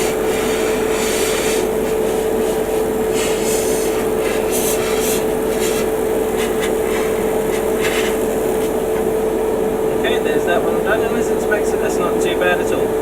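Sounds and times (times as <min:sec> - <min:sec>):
airbrush spray hissing: 0:00.0 - 0:08.9
compressor humming: 0:00.0 - 0:13.0.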